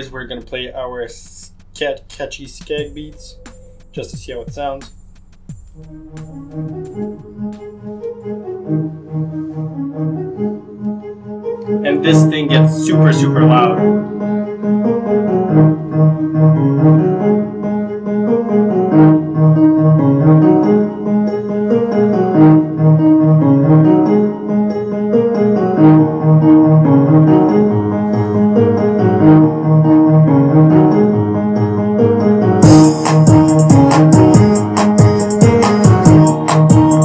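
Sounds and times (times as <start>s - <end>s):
deep bass line: 0.0s - 8.1s, 25.8s - 37.0s
piano chord beat: 0.0s - 37.0s.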